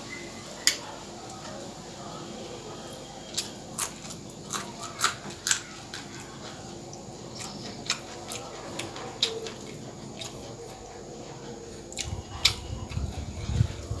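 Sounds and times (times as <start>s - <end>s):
person chewing and crunching: 3.3s - 10.9s, 11.7s - 13.8s.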